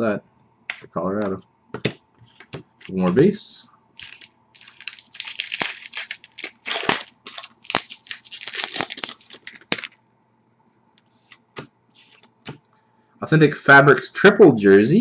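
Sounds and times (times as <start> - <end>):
card pack wrapper crinkling and tearing: 4.0 - 10.0.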